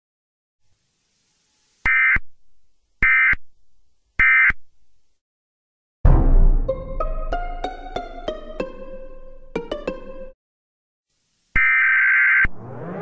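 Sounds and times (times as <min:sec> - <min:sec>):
buzzy data burst tones: 0:00.7 - 0:02.3, 0:11.5 - 0:13.0.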